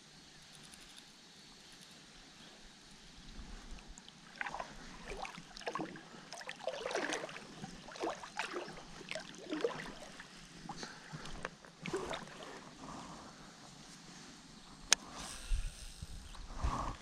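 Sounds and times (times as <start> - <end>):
creek water splashing: 3.9 - 12.7.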